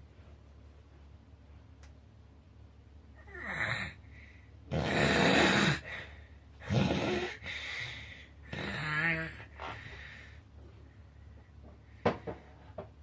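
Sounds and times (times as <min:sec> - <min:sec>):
person snoring loudly: 0:03.2 - 0:04.0, 0:04.7 - 0:07.5, 0:08.5 - 0:09.6.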